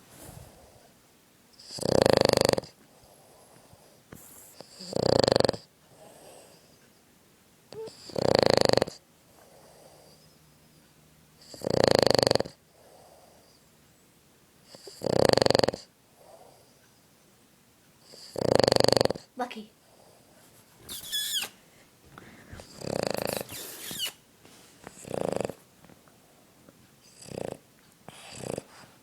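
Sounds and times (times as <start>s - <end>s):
dog snoring: 1.6s - 4.0s, 4.6s - 6.8s, 7.7s - 10.4s, 11.4s - 13.6s, 14.6s - 16.8s, 18.0s - 20.3s, 22.2s - 24.2s, 24.9s - 25.6s, 27.0s - 28.9s.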